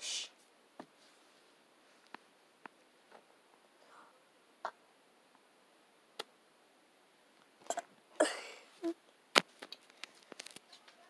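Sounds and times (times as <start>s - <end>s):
rustling: 0.4s - 4.0s.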